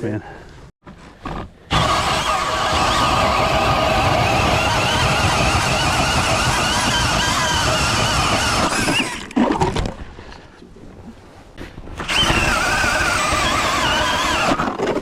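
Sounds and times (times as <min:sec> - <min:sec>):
power ice auger drilling: 0:01.7 - 0:09.3, 0:12.0 - 0:15.0.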